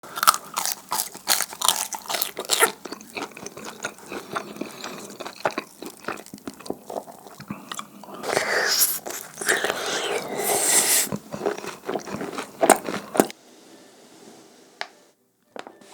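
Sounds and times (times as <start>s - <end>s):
wet sticky chewing: 0.1s - 13.3s
crisp crunching bites: 0.2s - 7.5s.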